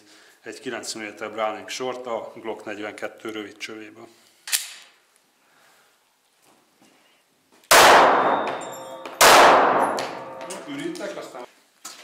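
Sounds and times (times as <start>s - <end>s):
pistol shot with echo: 7.7s - 10.5s.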